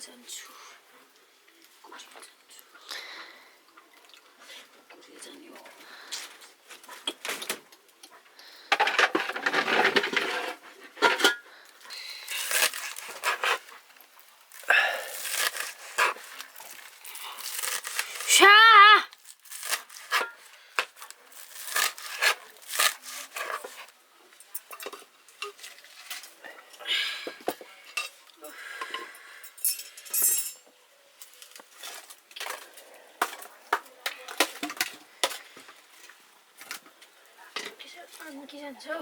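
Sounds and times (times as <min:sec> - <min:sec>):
utensils clinking on dishes: 0:08.8 - 0:11.4, 0:28.8 - 0:30.7.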